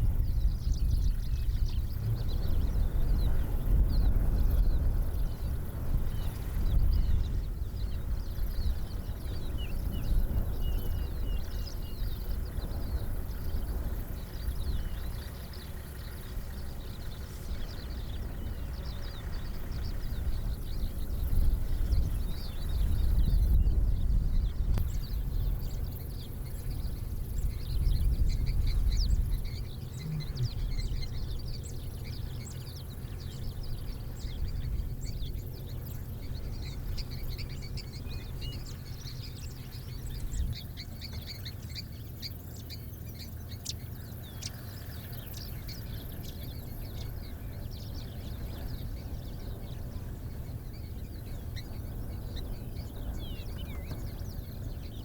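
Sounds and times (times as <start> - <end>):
birds chirping: 0.0 - 55.0
low rumble: 16.1 - 40.6.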